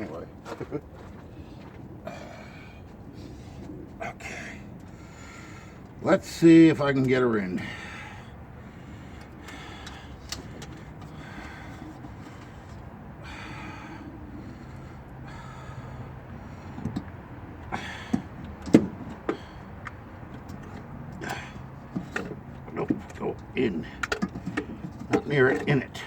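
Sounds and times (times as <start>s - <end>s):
metal clunks and knocks: 16.7s - 17.1s, 18.0s - 26.0s.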